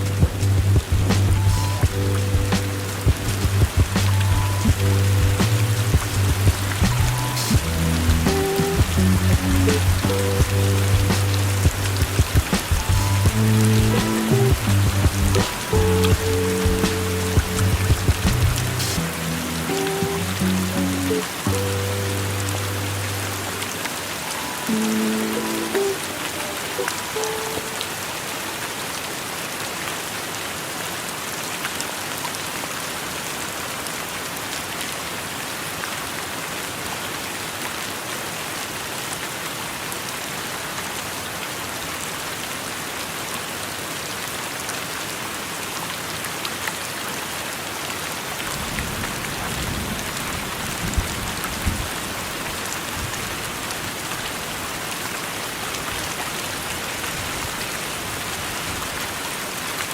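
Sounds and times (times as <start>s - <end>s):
low rumble: 0.0s - 19.6s
steady rain: 0.0s - 59.9s.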